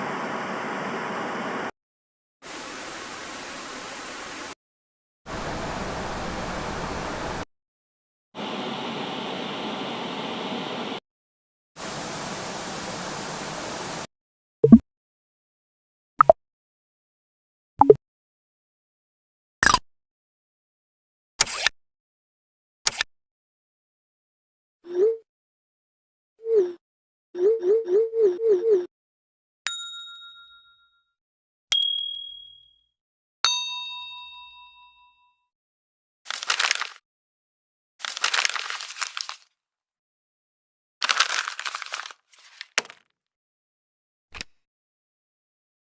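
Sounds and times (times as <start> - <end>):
hiss-like noise: 2.5 - 4.5, 11.8 - 14.1
bell-like dings: 29.7 - 32.9, 33.5 - 35.4.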